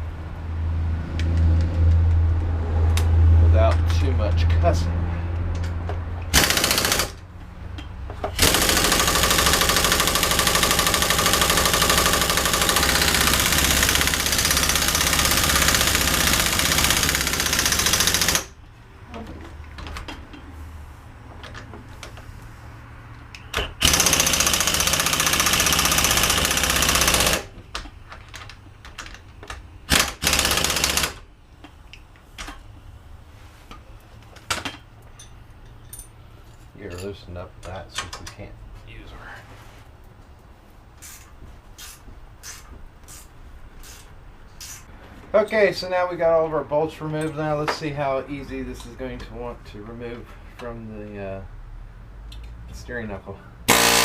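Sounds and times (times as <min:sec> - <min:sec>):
pneumatic impact wrench hammering: 0:06.3 - 0:07.2, 0:08.2 - 0:18.6, 0:23.4 - 0:27.6, 0:29.8 - 0:31.3, 0:53.7 - 0:54.0.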